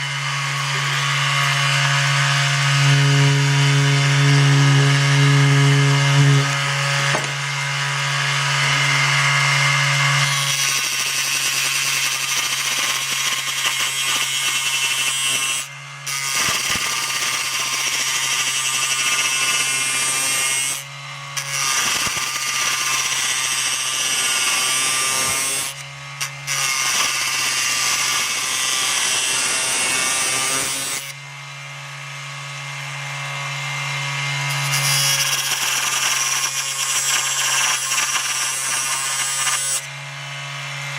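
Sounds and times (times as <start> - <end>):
lathe motor humming: 0.0 - 10.9
turning tool cutting wood: 0.0 - 40.9.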